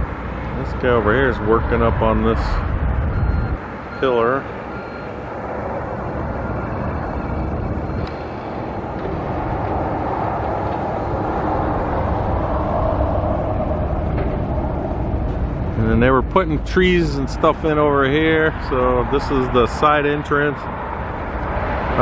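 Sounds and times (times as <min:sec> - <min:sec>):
vehicle and road rumble: 0:00.0 - 0:22.0.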